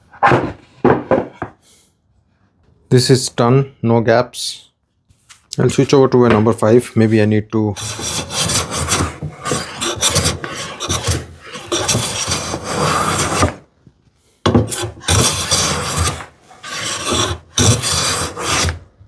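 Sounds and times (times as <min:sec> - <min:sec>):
hand plane strokes on wood: 0:07.8 - 0:13.6, 0:14.5 - 0:18.9.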